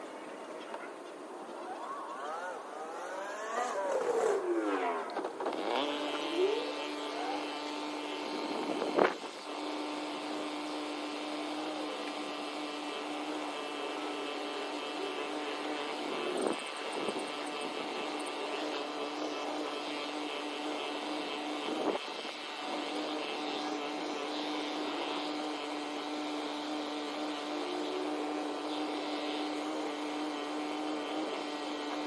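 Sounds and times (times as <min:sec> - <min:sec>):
engine running: 0:01.6 - 0:18.4.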